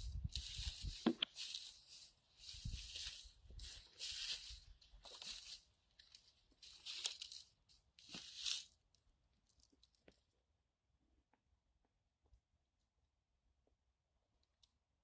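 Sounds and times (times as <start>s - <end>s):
footsteps crunching over debris: 0.1s - 8.8s.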